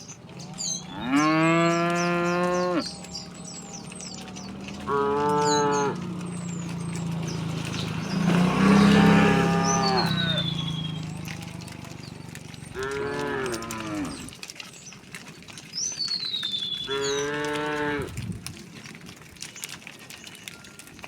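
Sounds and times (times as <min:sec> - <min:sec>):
low lowing drone: 0:00.2 - 0:14.4
cattle mooing: 0:00.2 - 0:14.5, 0:16.8 - 0:18.3.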